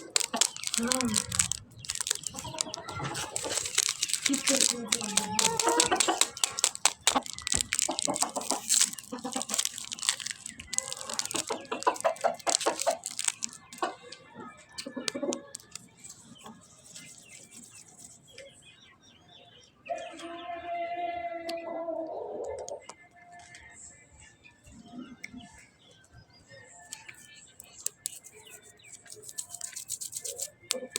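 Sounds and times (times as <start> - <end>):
plastic packaging crinkling: 0.0 - 14.2, 15.0 - 18.1, 27.1 - 30.9.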